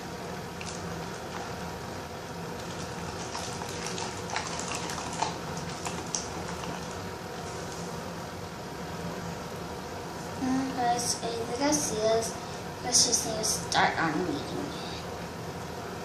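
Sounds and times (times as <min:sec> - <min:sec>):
slime squelching and crackling: 0:02.5 - 0:07.9
steady background hiss: 0:06.4 - 0:16.0.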